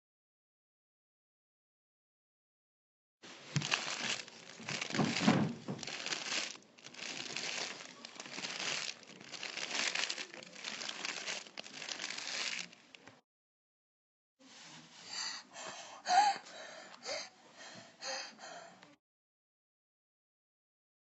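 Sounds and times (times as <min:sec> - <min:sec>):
material crumpled and crinkled: 0:03.2 - 0:13.0.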